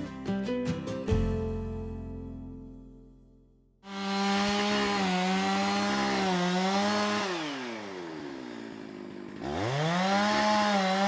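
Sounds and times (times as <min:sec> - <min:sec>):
chainsaw cutting wood: 0:03.9 - 0:11.0.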